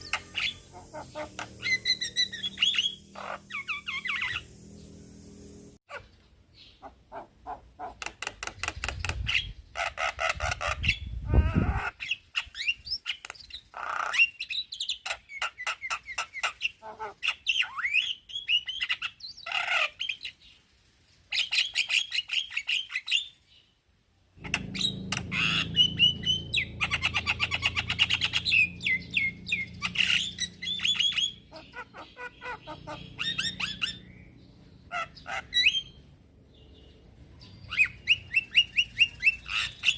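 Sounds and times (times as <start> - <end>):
myna bird singing: 0.0 - 20.6, 24.4 - 39.9
low steady hum: 24.4 - 35.2.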